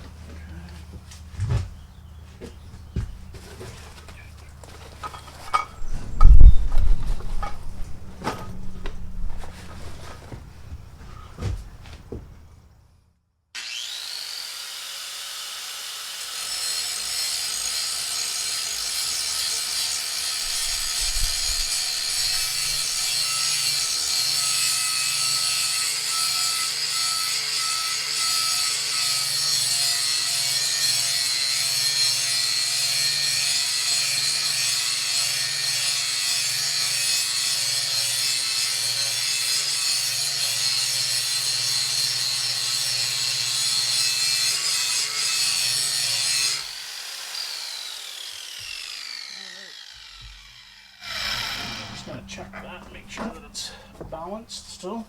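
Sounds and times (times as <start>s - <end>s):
handling knocks: 1.0s - 12.4s, 51.6s - 54.8s
grinder grinding steel blade: 13.6s - 53.8s.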